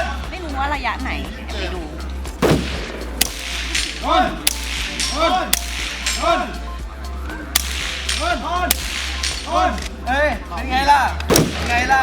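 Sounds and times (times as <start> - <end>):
synth music with bass: 0.0 - 12.0
rifle shots: 2.4 - 6.2, 11.3 - 12.0.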